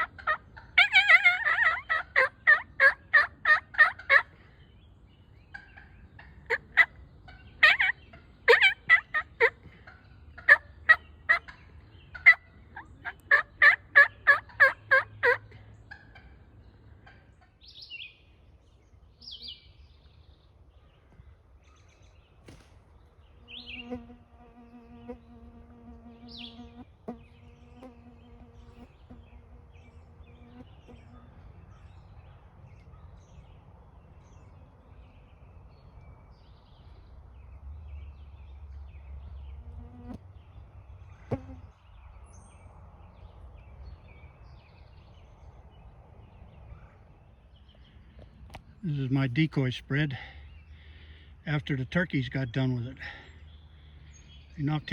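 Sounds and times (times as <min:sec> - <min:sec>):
wild turkeys calling: 0:00.0 - 0:17.8.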